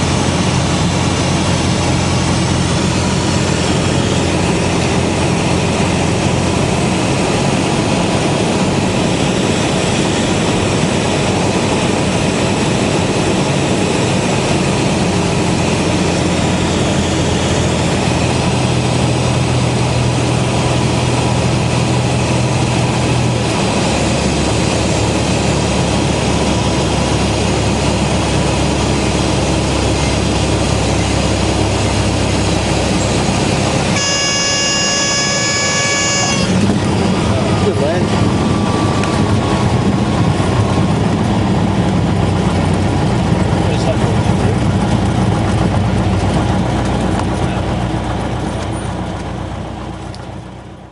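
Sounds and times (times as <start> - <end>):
aircraft engine and propeller drone: 0.0 - 50.9
reedy stall warning horn: 33.7 - 36.9.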